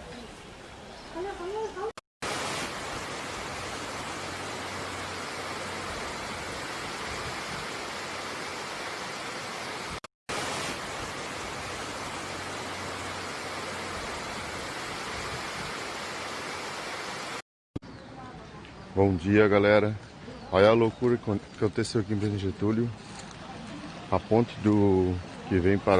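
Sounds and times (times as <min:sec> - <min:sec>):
rush of water: 0:02.2 - 0:17.4.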